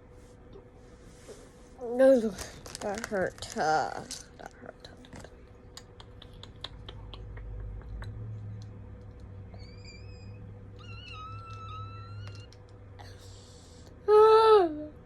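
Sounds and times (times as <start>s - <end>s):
high-pitched wavering whine: 9.4s - 13.8s.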